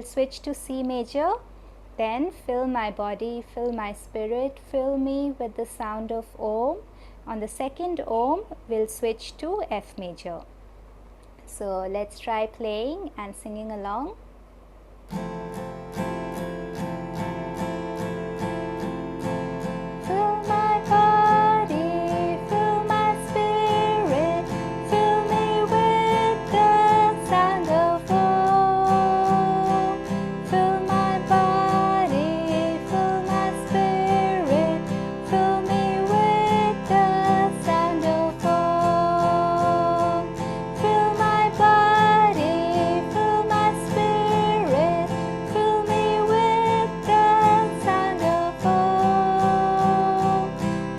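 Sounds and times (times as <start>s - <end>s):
acoustic guitar strumming: 15.0s - 50.9s.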